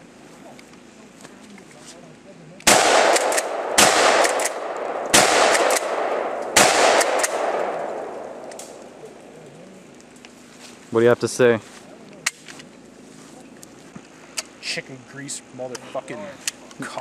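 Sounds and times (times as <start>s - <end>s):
shotgun shots with echo: 2.6s - 9.0s.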